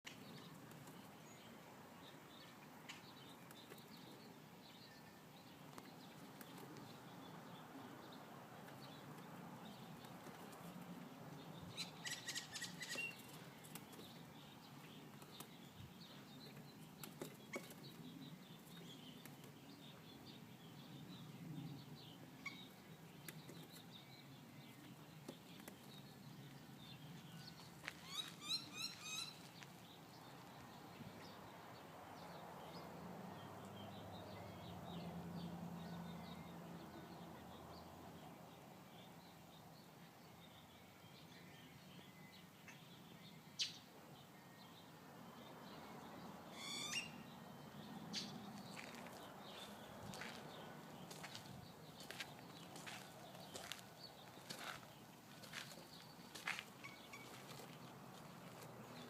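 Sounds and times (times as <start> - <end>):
faint bird sounds: 0.1 - 59.0
wings fluttering and tapping: 8.7 - 10.9, 13.2 - 14.3.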